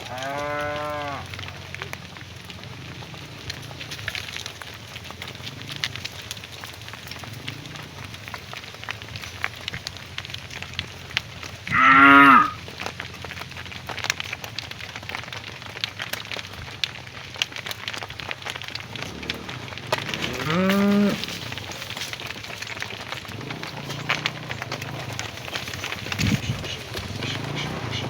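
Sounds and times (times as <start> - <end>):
cow mooing: 0.0 - 1.6, 7.1 - 8.3, 11.7 - 12.6, 18.9 - 21.6, 23.2 - 25.8
light crackling and clicking: 0.0 - 28.0.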